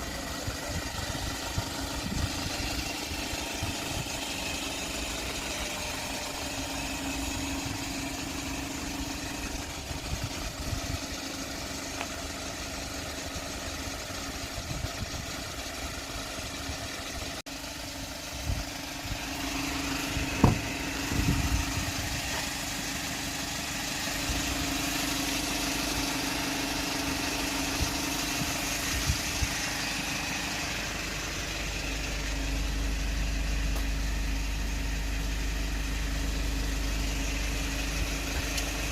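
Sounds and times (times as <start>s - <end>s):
truck engine running: 0.0s - 38.9s
thumps: 20.4s - 20.7s.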